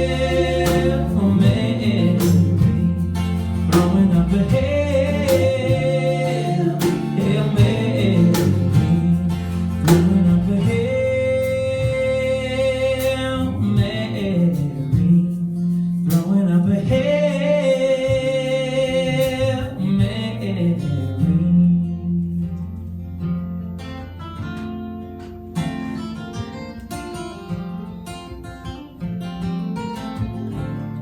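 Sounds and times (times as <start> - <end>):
person singing: 0.0 - 3.0, 3.7 - 14.4
acoustic guitar: 0.0 - 31.0.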